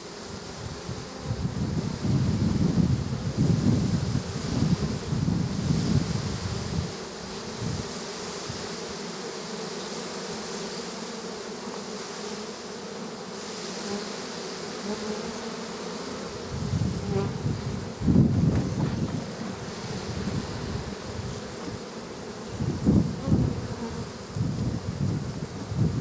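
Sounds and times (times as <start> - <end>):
bees buzzing: 0.0 - 26.0
wind buffeting microphone: 0.6 - 7.0, 16.4 - 21.8, 22.5 - 26.0.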